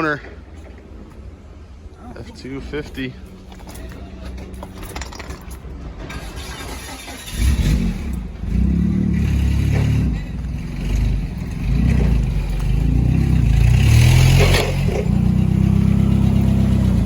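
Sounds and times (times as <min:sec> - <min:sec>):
diesel engine revving: 0:05.8 - 0:17.0.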